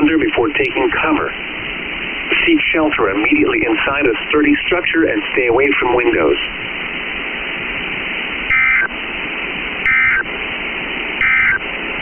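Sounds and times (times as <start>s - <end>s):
radio static hiss: 0.0s - 12.0s
warbling two-tone data chirps: 8.5s - 8.9s, 9.9s - 10.2s, 11.2s - 11.6s.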